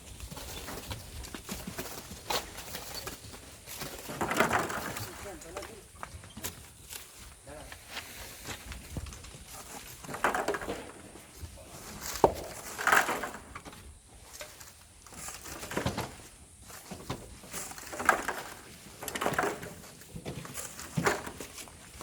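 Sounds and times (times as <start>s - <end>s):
shovels scraping sand and gravel: 6.8s - 8.9s.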